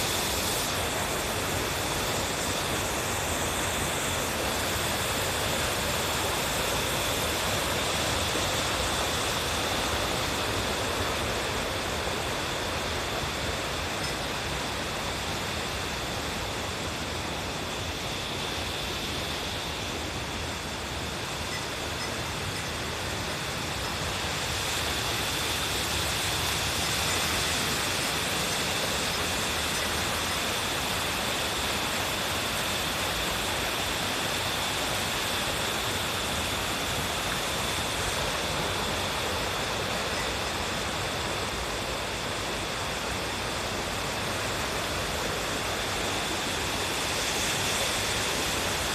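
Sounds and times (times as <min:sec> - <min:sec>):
waterfall rushing: 0:00.0 - 0:48.9.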